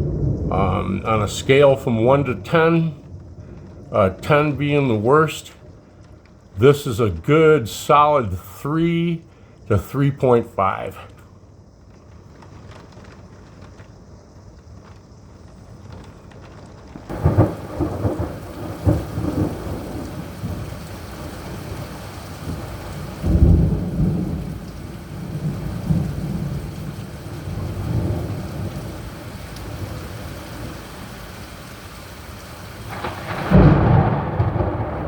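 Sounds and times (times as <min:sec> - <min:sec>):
thunder cracks and rumbles: 0:00.0 - 0:08.1, 0:17.1 - 0:35.0
steady rain: 0:00.0 - 0:35.0.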